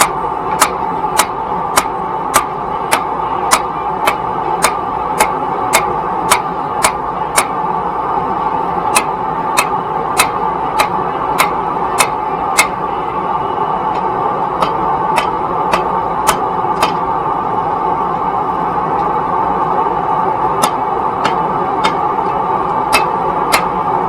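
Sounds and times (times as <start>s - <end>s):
hammer striking hot metal: 0.0s - 7.6s, 8.9s - 12.8s, 13.9s - 17.1s, 20.6s - 23.9s.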